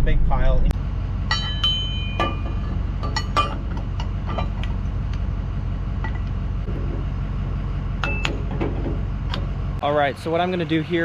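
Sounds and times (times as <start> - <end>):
engine idling: 0.0 - 11.0
light metallic clinks: 1.3 - 4.6.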